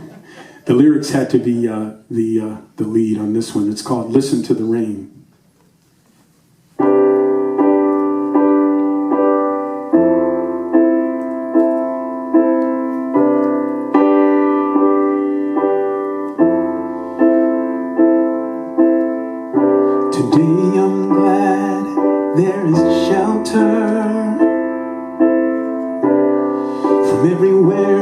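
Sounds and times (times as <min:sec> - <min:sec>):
piano chords: 0:06.8 - 0:28.0.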